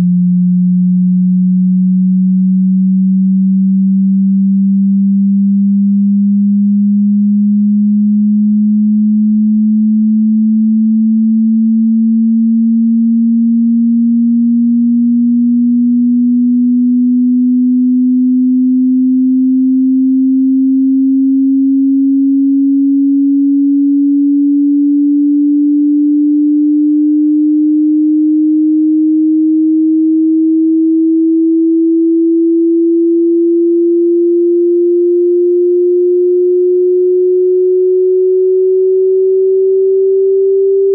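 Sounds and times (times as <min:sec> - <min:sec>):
rising sine tone sweep: 0:00.0 - 0:40.9.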